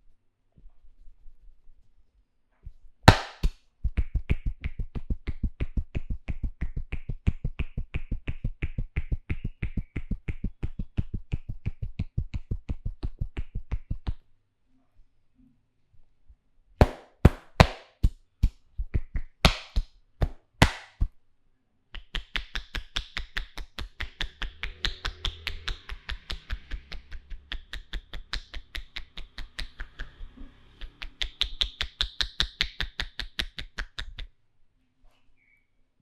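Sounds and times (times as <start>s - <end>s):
hands slapping head: 3.1s - 3.6s, 16.8s - 21.1s, 22.0s - 30.2s, 30.9s - 34.2s
fast hand taps: 3.1s - 14.2s, 16.8s - 21.1s, 22.0s - 30.2s, 31.0s - 34.2s.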